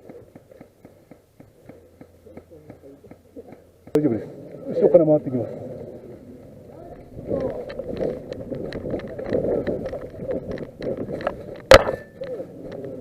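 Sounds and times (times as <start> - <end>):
sharp crack with metallic ring: 11.7 - 12.4.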